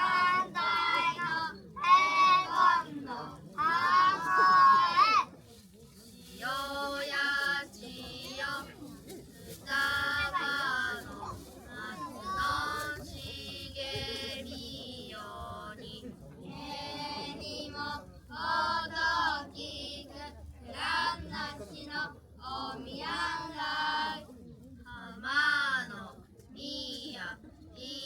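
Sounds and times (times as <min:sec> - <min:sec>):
children singing and calling out: 0:00.0 - 0:05.4.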